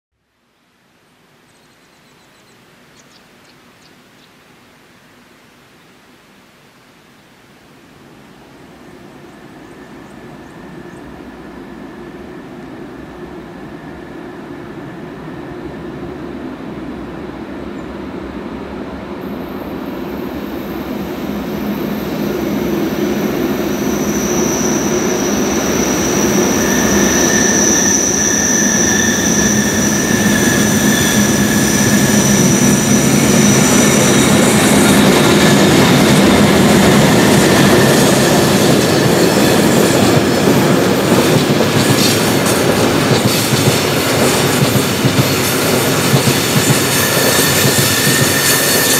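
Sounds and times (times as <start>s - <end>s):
freight train approaching: 8.4s - 48.9s
high steady squeal: 19.2s - 48.9s
rail clatter and wheel clicks: 21.6s - 48.9s.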